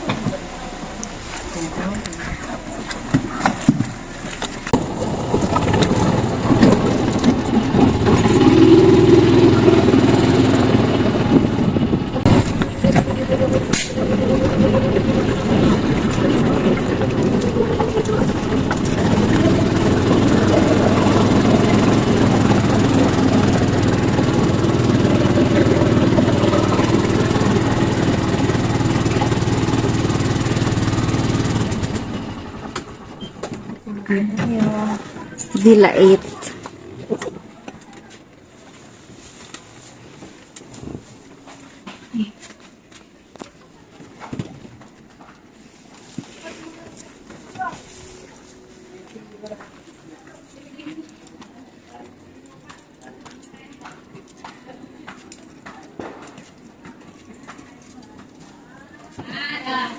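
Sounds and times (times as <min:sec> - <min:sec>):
vehicle engine running: 0:00.0 - 0:41.9
road noise: 0:00.0 - 0:59.9.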